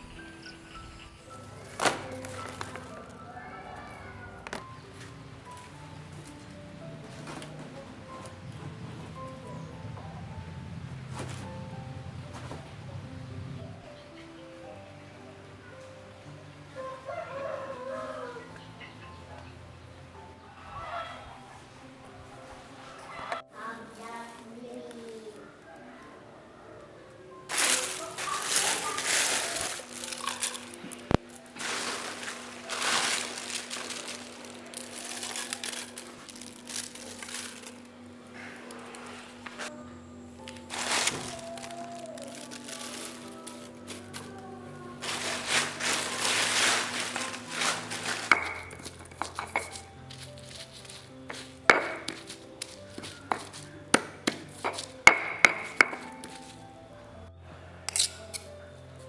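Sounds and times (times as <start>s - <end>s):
crinkling rustles: 0.0s - 9.4s, 27.5s - 39.7s, 40.4s - 53.7s
soft background music: 0.0s - 59.0s
steady low hum: 30.7s - 49.2s.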